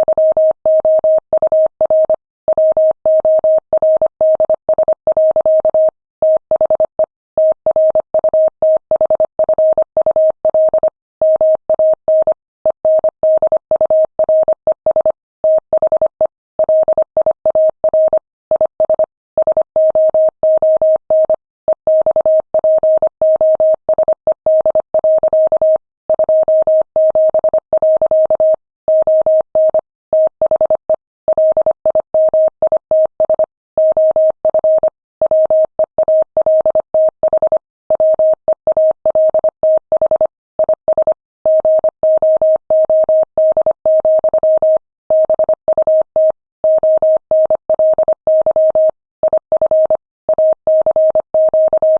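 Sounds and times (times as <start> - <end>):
morse code tone: 36.4 - 51.9.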